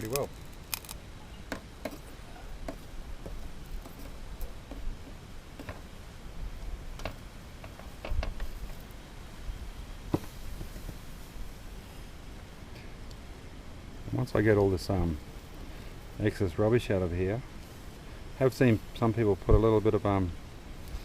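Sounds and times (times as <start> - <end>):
melting metal ticks and pops: 0.0 - 1.0.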